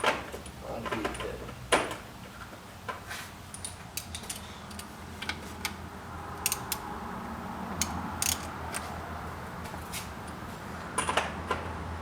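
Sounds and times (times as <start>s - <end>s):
metal tools clicking and clinking: 6.4s - 6.9s, 7.8s - 8.9s.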